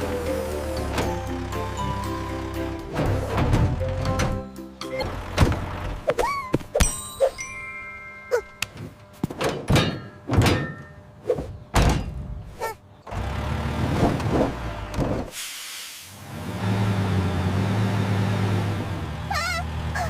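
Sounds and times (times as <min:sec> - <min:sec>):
hiss: 0:15.3 - 0:16.3.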